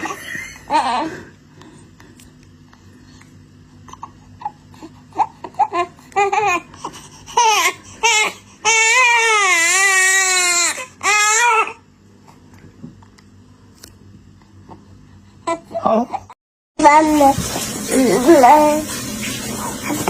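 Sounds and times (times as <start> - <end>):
baby crying: 3.9 - 11.9.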